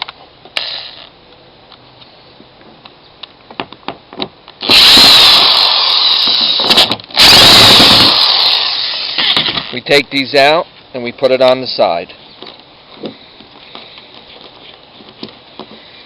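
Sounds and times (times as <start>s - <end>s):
power drill running: 4.6s - 9.7s.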